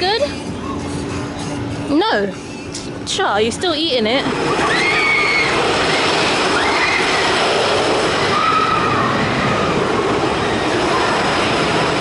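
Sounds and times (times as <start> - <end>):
roller coaster cars on track: 0.0 - 12.0
riders screaming: 4.5 - 7.4, 8.2 - 9.8.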